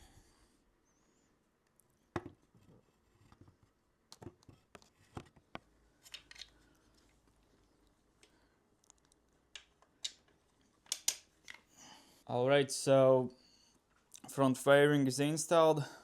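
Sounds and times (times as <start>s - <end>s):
plastic panels clicking and knocking: 9.6s - 11.6s.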